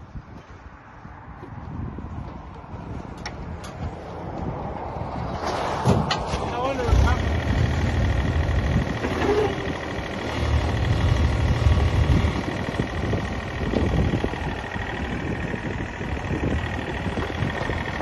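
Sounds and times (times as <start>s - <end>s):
excavator diesel engine rumbling: 5.9s - 18.0s.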